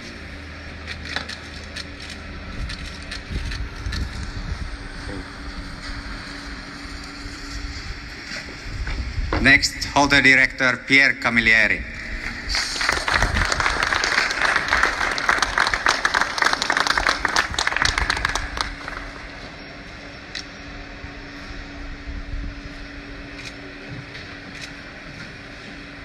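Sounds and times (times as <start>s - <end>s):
steady low hum: 0.0s - 26.0s
scattered claps: 12.2s - 19.5s
crowd applauding: 12.2s - 19.6s.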